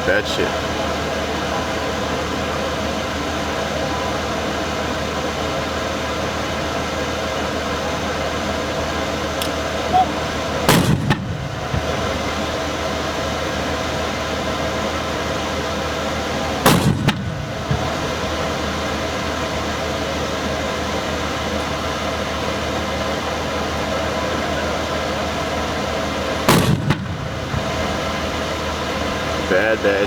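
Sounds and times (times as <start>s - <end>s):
steady background hum: 0.0s - 30.0s
loud mortar blasts: 10.2s - 13.9s, 16.5s - 19.5s, 26.2s - 29.6s.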